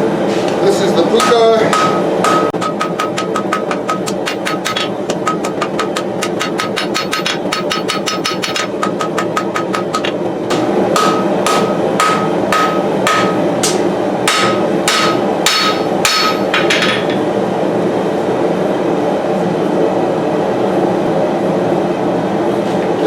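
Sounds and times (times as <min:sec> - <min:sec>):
gas forge burner roaring: 0:00.0 - 0:23.0
hammer ringing on anvil: 0:01.2 - 0:17.3.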